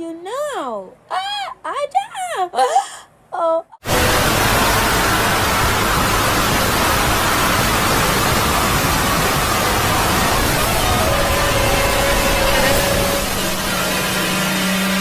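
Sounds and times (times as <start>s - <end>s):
loud static hiss: 3.8s - 15.0s.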